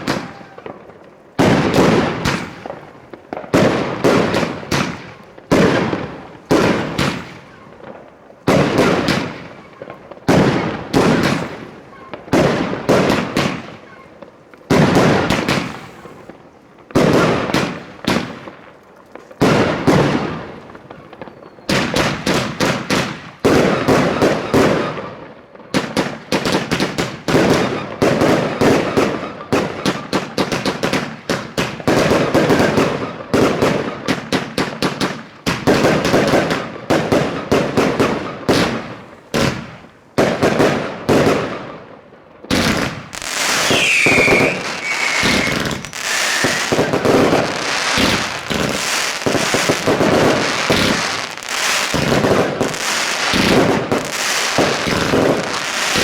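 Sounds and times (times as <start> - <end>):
firework whistles: 0.0 - 2.9, 14.9 - 16.4, 19.7 - 22.6, 43.1 - 56.0
fireworks bangs and crackle: 0.0 - 56.0.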